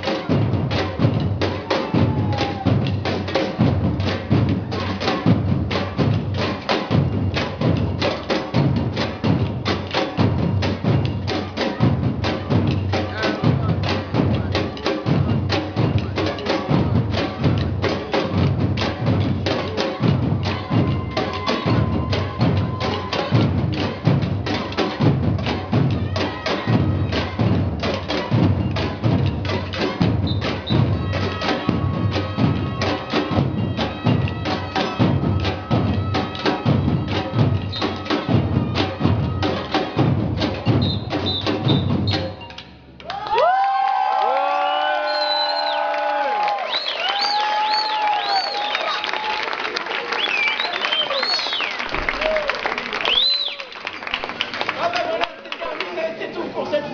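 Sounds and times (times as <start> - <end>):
low drum beat: 0.0 - 42.2.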